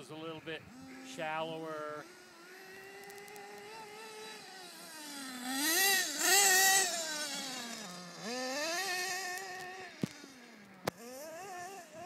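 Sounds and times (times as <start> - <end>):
rc truck engine revving: 0.7 - 12.0.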